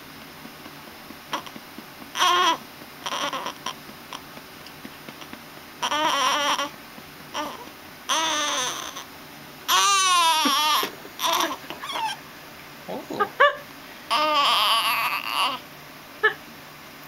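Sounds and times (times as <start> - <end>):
baby fussing and crying: 1.3 - 4.2, 5.1 - 9.1, 9.7 - 12.2, 14.1 - 15.6.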